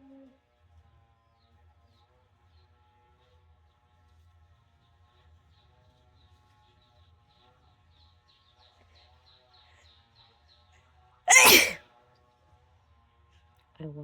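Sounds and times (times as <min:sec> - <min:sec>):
loud sneeze: 0:11.3 - 0:11.8.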